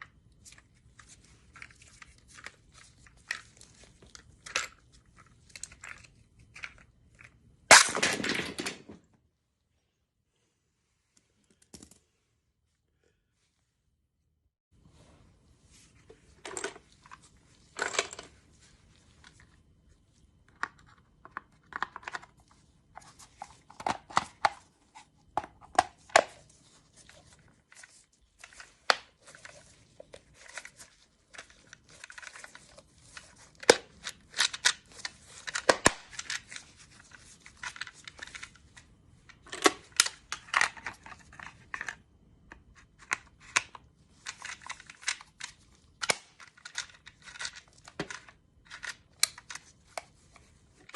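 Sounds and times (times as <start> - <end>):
plastic parts clicking and scraping: 0.4 - 7.4, 20.5 - 50.9.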